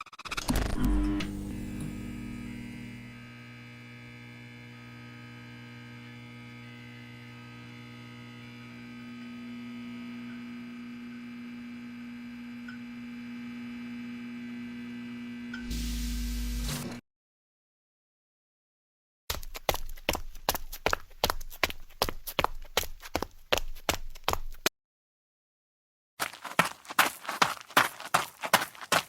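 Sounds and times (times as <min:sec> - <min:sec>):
electronic hum of held tones: 0:00.0 - 0:17.0.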